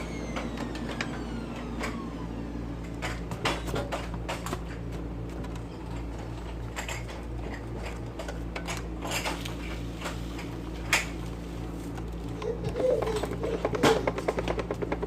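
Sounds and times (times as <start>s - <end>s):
vacuum cleaner humming: 0.0s - 6.4s.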